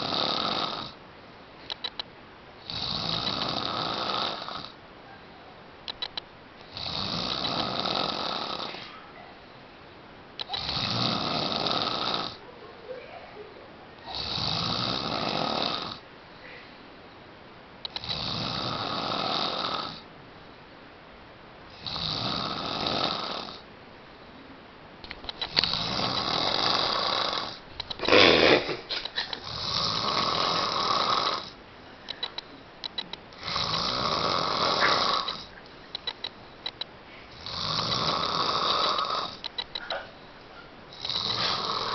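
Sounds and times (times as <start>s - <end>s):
loud rhythmic snoring: 0.0s - 1.0s, 2.6s - 4.8s, 6.6s - 8.9s, 10.4s - 12.4s, 14.0s - 16.0s, 17.9s - 20.1s, 21.7s - 23.7s, 25.5s - 28.8s, 29.4s - 31.6s, 33.3s - 35.6s, 37.3s - 39.6s, 40.9s - 41.9s
short loud snort: 28.0s - 28.9s, 34.7s - 35.3s, 41.0s - 41.9s.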